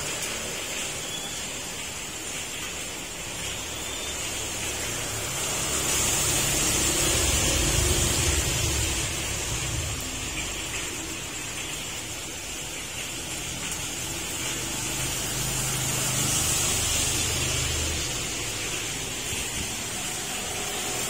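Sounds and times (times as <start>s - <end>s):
heavy rain pouring: 0.0s - 21.0s
low rumble: 7.2s - 11.0s.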